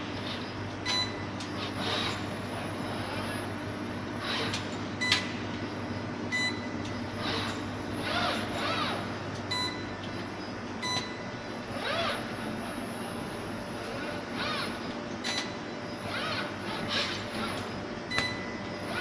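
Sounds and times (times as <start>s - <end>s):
machine hum: 0.0s - 19.0s.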